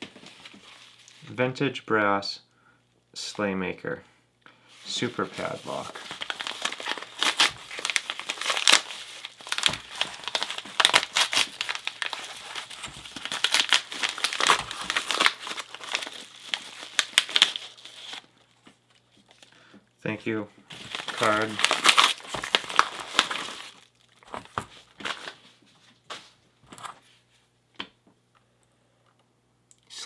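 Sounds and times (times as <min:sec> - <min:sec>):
packaging crinkling and tearing: 0:00.0 - 0:01.3, 0:04.8 - 0:18.6, 0:20.7 - 0:25.4.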